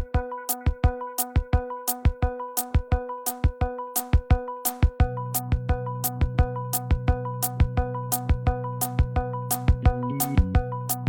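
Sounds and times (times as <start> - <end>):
electronic beat music: 0.0 - 11.0
bass line: 9.8 - 10.8.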